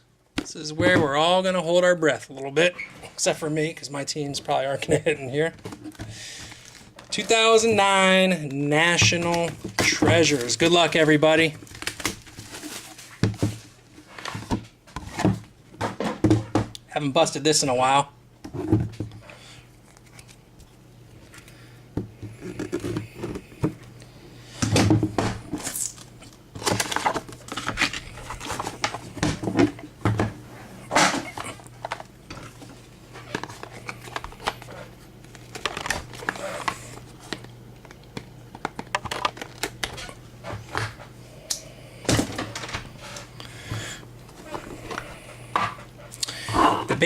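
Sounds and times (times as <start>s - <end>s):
wrapping crinkling and tearing: 6.2s - 7.6s, 10.2s - 14.0s, 19.8s - 20.6s, 33.2s - 38.0s, 38.8s - 40.2s.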